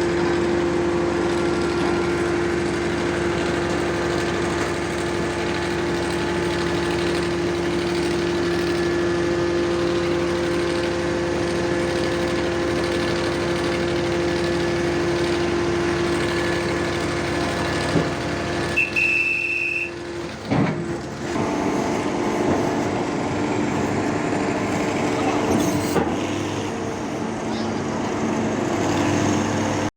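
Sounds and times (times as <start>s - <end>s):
pile driver engine humming: 0.0s - 29.9s
short high beep: 18.7s - 20.0s.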